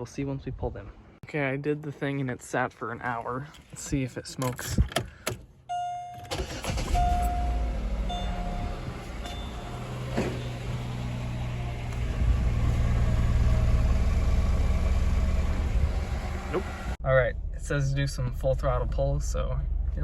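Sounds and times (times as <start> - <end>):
car engine starting and idling: 6.2 - 20.0
short chime tones: 7.0 - 9.7.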